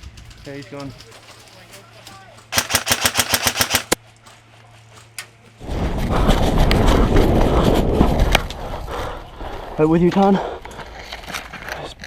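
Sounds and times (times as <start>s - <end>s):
airsoft gun shots: 2.5s - 4.0s.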